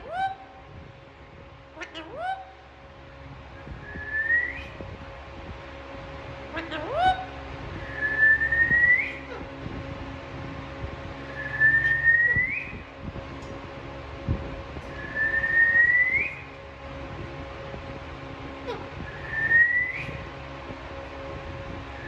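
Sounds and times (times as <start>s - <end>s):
parrot whistling: 3.9s - 4.8s, 7.9s - 9.3s, 11.3s - 12.8s, 15.0s - 16.5s, 19.1s - 20.2s.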